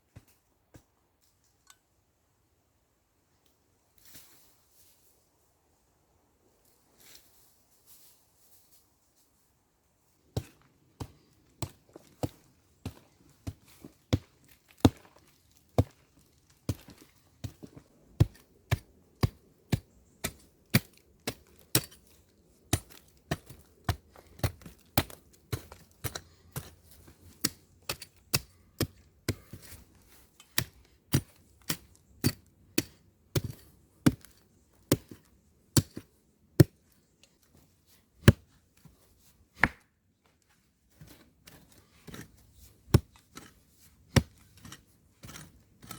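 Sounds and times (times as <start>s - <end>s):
axe chopping: 10.4s - 15.1s, 16.7s - 29.8s, 30.5s - 36.8s, 38.2s - 38.5s, 39.6s - 39.9s, 42.9s - 45.9s.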